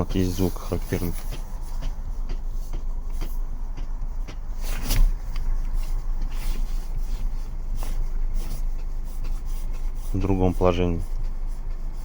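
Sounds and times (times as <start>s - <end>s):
steering rack knocking: 0.0s - 6.4s
low car rumble: 0.0s - 12.0s.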